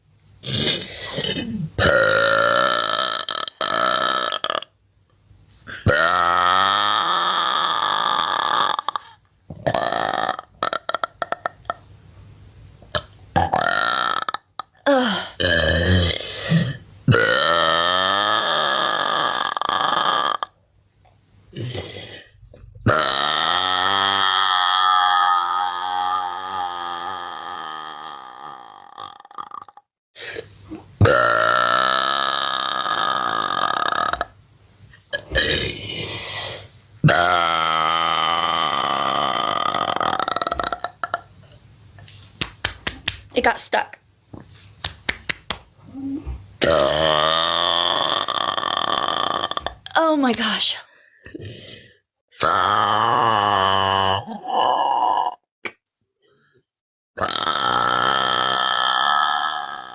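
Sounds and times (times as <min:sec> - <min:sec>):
woman burping: 0:00.5 - 0:04.7, 0:31.0 - 0:34.4, 0:38.2 - 0:41.3, 0:57.2 - 0:59.9.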